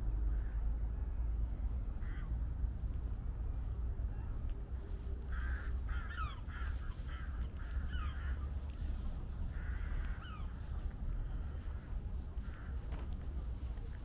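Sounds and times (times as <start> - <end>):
crows cawing: 2.0 - 2.3, 5.3 - 8.4, 9.5 - 10.5, 12.4 - 12.8.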